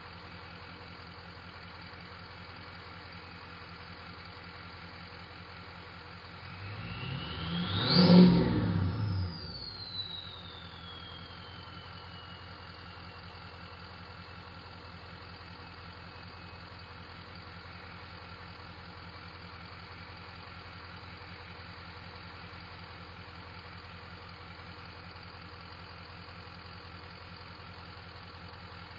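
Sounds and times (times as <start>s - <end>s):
diesel engine idling with clatter: 0.0s - 7.1s, 7.7s - 28.9s
turbo whistle: 6.7s - 13.6s.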